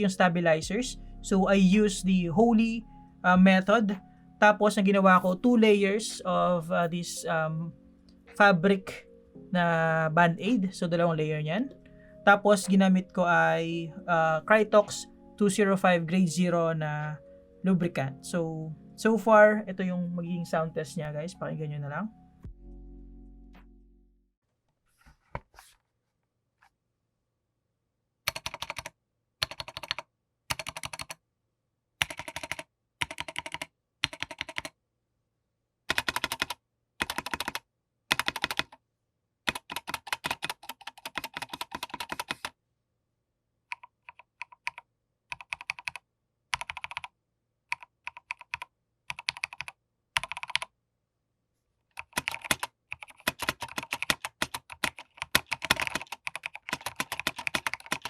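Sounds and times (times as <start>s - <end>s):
typing on mechanical keyboard: 28.3s - 31.2s, 32.0s - 34.7s, 35.9s - 38.8s, 39.5s - 42.5s, 43.7s - 47.1s, 47.7s - 50.7s, 51.9s - 58.0s.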